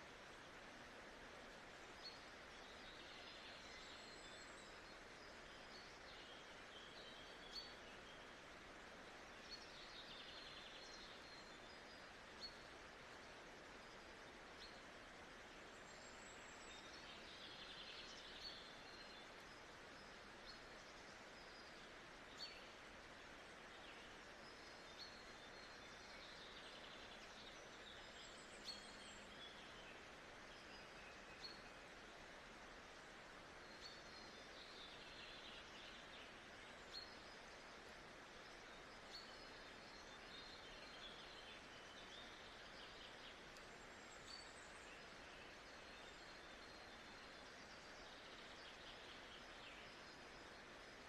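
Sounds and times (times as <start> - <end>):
soft steady hiss: 0.0 - 51.0
faint clicks: 43.5 - 43.8.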